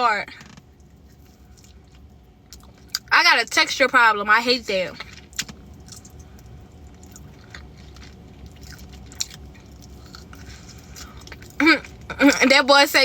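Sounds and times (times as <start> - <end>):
person chewing wetly: 0.8 - 3.1, 5.1 - 12.1.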